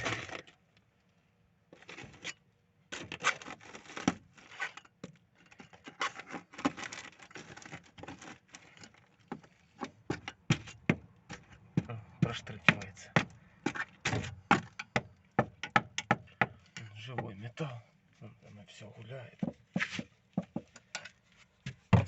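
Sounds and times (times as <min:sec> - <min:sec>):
rusty metal scraping and crackling: 0:01.8 - 0:17.4.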